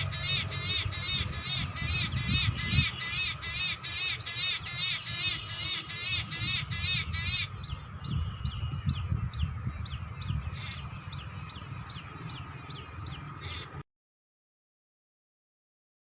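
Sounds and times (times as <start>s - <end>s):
harsh crow-like bird calls: 0.0s - 7.5s, 13.4s - 13.8s.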